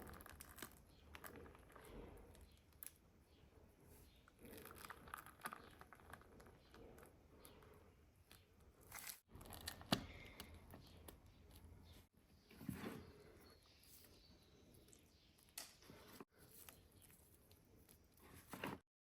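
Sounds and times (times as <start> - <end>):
food wrapping crinkling and tearing: 0.0 - 1.8.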